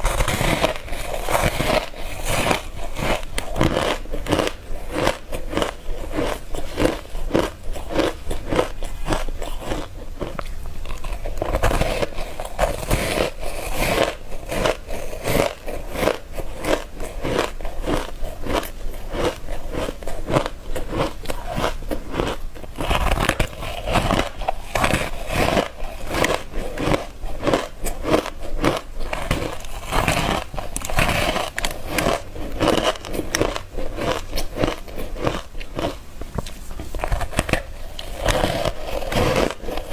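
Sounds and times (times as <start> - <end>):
ice being crunched: 37.0 - 39.9.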